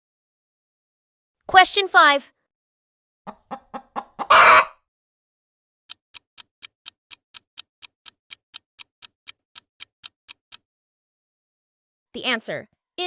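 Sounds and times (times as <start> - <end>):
countdown clock ticking: 5.9 - 10.6.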